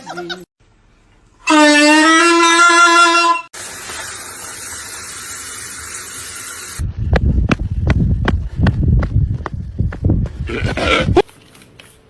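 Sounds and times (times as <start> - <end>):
low thumps and sharp knocks: 7.0 - 10.7.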